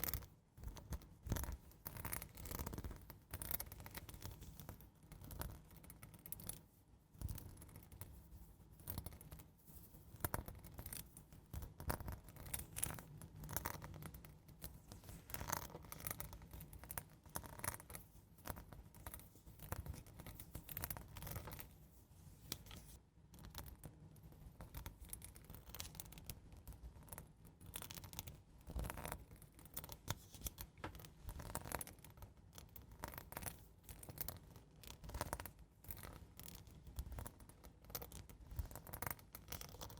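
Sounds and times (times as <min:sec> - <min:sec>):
faint scratching on surface: 0:17.3 - 0:23.0.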